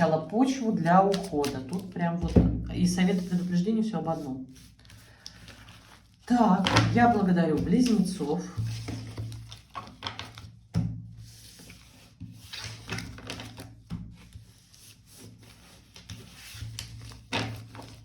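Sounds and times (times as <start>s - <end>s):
cards being shuffled: 0.5s - 2.4s, 4.5s - 10.5s, 11.6s - 14.4s.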